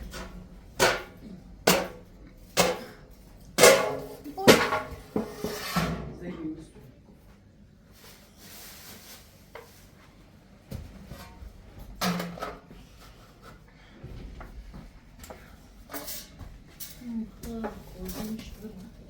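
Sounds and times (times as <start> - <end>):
objects knocking and clattering: 0.0 - 6.1, 10.7 - 19.0.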